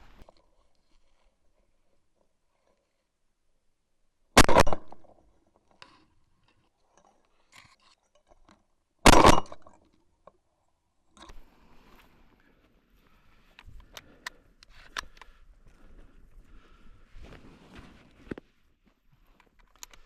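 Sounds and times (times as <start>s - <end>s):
shotgun shots: 4.4s - 5.0s, 9.1s - 9.6s.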